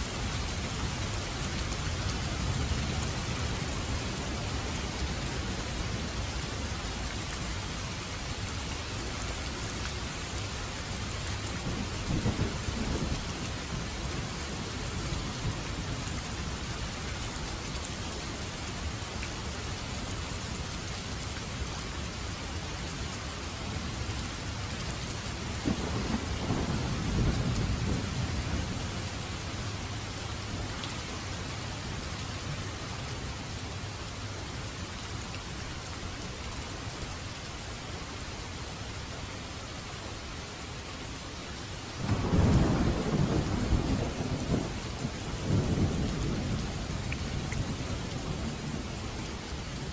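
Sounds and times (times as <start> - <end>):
rain hissing: 25.3 - 49.9.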